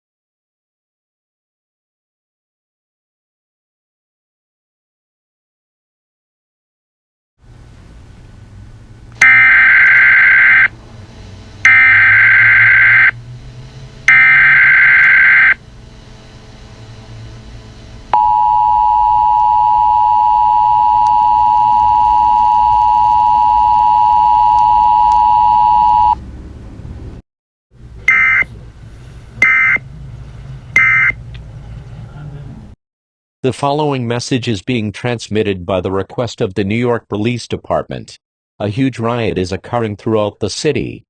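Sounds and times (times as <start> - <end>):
screeching data-tone bursts: 9.2 - 10.7, 11.6 - 13.2, 14.1 - 15.6, 28.1 - 28.5, 29.4 - 29.8
steady two-tone attention signal: 9.2 - 10.7, 11.6 - 13.2, 14.1 - 15.6, 18.1 - 26.2, 28.1 - 28.5, 29.4 - 29.8.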